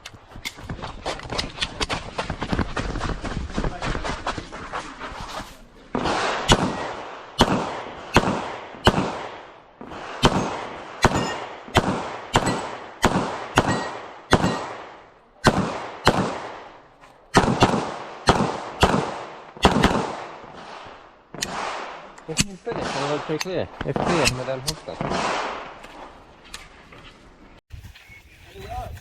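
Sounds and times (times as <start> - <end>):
pistol shots with echo: 6.0 - 20.8, 21.4 - 25.8.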